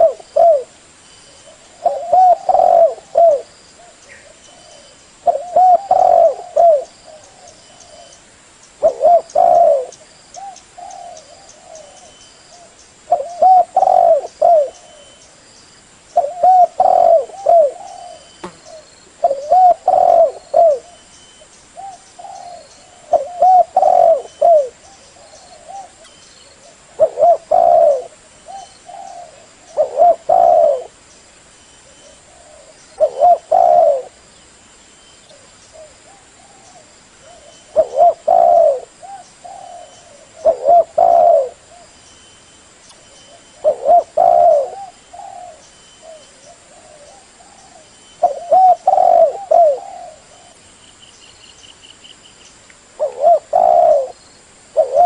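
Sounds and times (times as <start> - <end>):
dove cooing: 0.0 - 0.8, 1.4 - 8.2, 8.8 - 15.2, 16.2 - 21.1, 21.8 - 31.0, 31.8 - 34.2, 35.3 - 42.0, 43.1 - 50.6, 53.0 - 54.2, 54.8 - 55.0.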